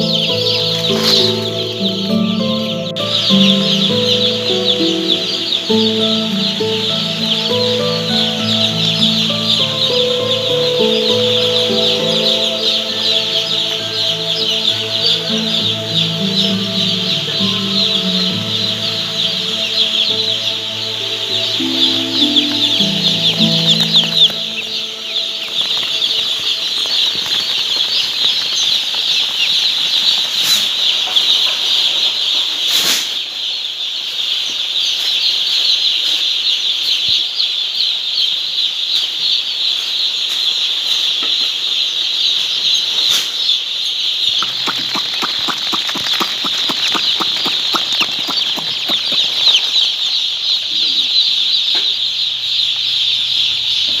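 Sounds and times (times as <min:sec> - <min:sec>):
chicks peeping: 0:00.0 - 0:54.0
quick ticks: 0:44.4 - 0:49.6.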